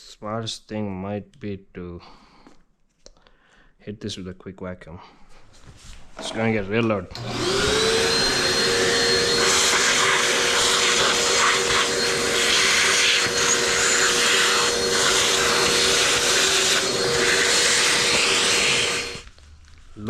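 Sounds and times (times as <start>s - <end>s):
vacuum cleaner running: 7.1s - 19.3s.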